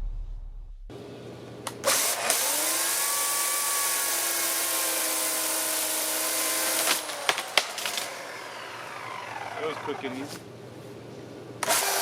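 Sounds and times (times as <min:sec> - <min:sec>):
chainsaw engine revving: 0:01.8 - 0:10.4, 0:11.6 - 0:12.0.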